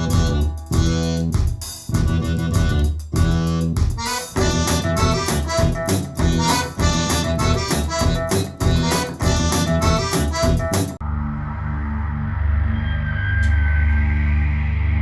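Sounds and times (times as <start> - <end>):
instrumental music with steady beat: 0.0 - 11.0.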